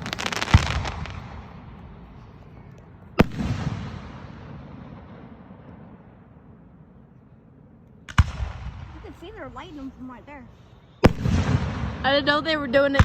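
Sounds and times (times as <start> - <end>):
fireworks bang: 0.0 - 1.8, 3.2 - 6.0, 11.0 - 13.0
fireworks crackling: 0.0 - 5.8, 8.0 - 13.0.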